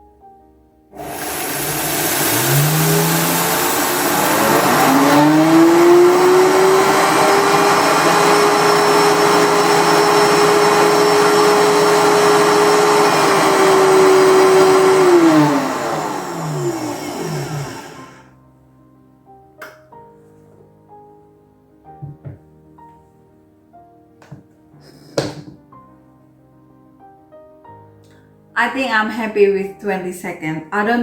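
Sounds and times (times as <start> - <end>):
blender grinding seeds: 1.0 - 18.3.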